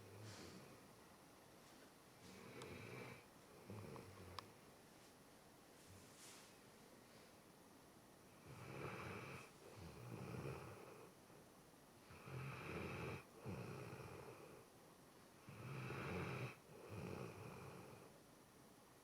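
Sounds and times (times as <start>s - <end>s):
pet snoring: 2.3s - 4.4s, 8.4s - 11.1s, 12.1s - 14.6s, 15.4s - 18.1s.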